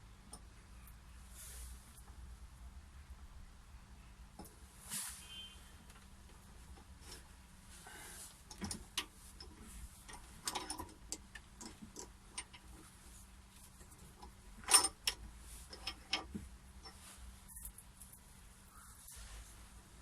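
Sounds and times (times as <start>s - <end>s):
wood and metal parts knocking: 8.5s - 12.8s, 13.8s - 17.0s.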